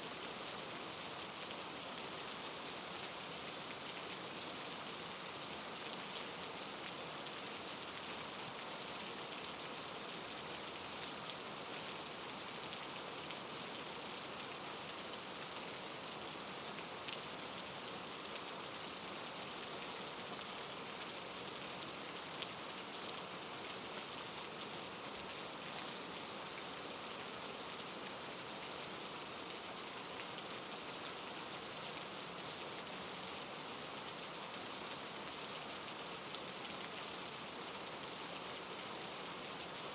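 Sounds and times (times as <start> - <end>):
soft rain falling: 0.0 - 39.9.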